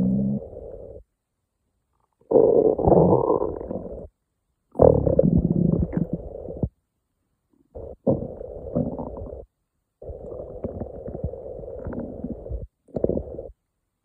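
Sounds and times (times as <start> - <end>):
stomach growling: 0.0 - 1.0, 2.2 - 4.1, 4.8 - 6.7, 7.7 - 13.6.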